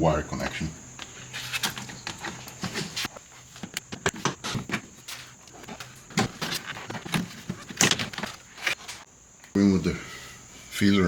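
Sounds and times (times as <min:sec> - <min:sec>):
hand tools clicking and knocking: 0:01.6 - 0:09.0.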